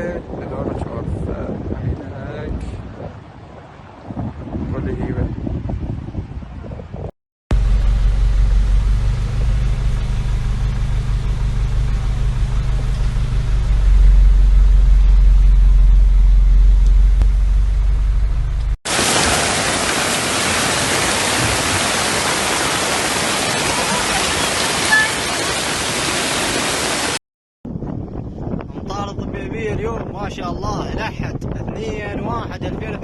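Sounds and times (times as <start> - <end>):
vehicle engine rumble: 7.5 - 18.8
rushing water: 18.9 - 27.2.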